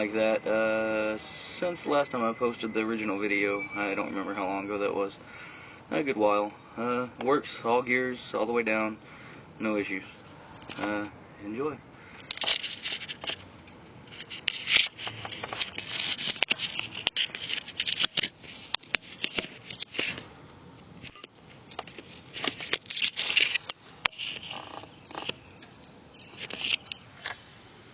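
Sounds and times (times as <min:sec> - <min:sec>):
rustling and scraping: 0:12.1 - 0:27.4.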